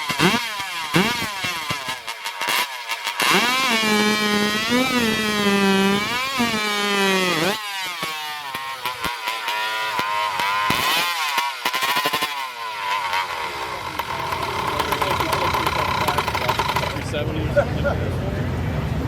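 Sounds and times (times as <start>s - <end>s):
chainsaw revving: 0.0s - 17.2s
chain cutting wood crackle: 13.1s - 17.0s.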